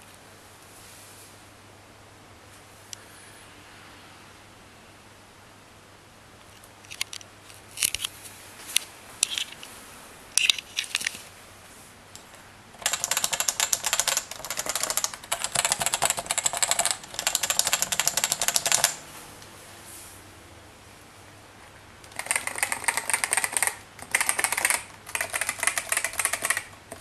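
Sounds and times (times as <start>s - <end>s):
keyboard typing: 12.8s - 19.0s, 22.1s - 27.0s.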